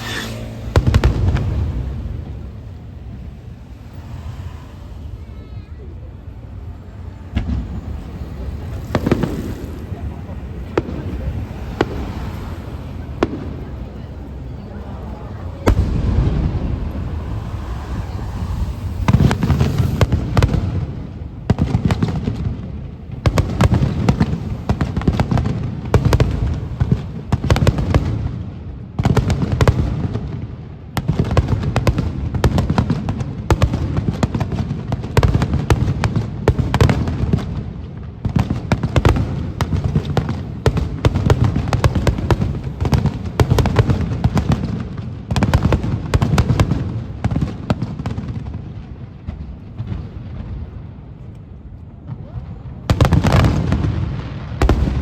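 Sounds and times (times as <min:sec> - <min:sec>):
fireworks bursts and crackling bangs: 0:00.0 - 0:55.0.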